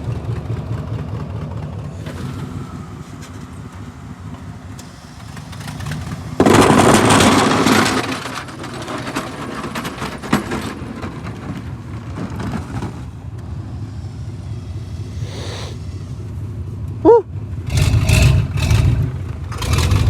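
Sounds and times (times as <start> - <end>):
vehicle engine running: 0.0 - 8.0, 11.3 - 20.0.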